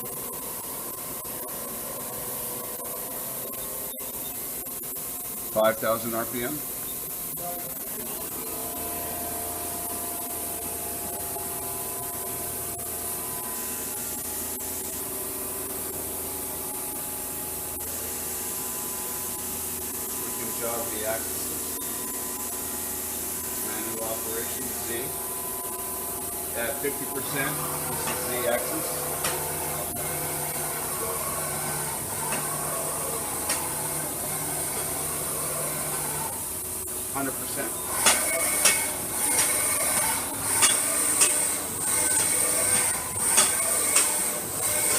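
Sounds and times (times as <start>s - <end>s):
machine spindle whining: 15.8s - 44.9s.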